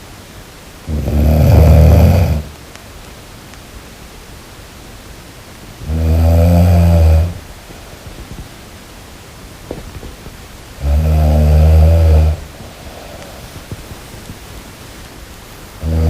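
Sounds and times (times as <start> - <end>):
person snoring loudly: 0.8 - 2.6, 5.8 - 7.4, 10.8 - 13.7, 15.8 - 16.0.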